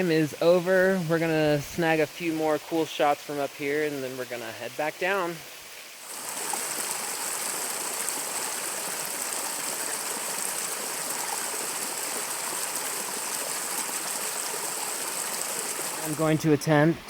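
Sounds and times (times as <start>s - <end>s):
waterfall rushing: 6.0s - 17.0s.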